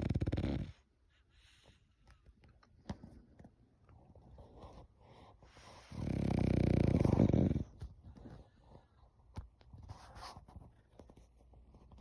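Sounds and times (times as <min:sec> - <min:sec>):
dog snoring: 0:00.0 - 0:00.8, 0:05.8 - 0:07.8.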